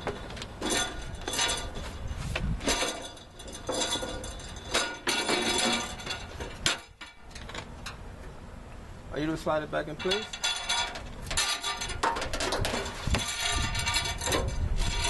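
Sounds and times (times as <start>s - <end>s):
body panel scraping and clattering: 10.3s - 15.0s.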